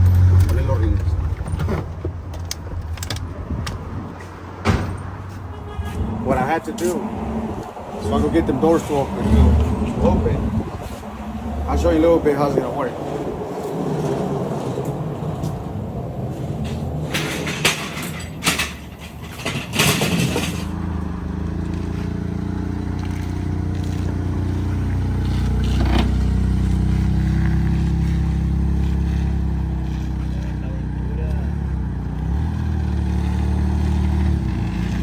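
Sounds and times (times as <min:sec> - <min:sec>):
sharp clicks and knocks: 0:00.0 - 0:03.9, 0:16.6 - 0:20.8
vehicle engine running: 0:18.6 - 0:35.0.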